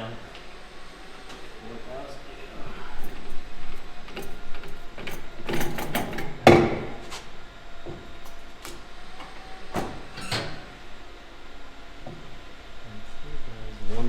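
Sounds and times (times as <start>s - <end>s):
sharp knocks and clanks on wheel: 3.1s - 10.6s.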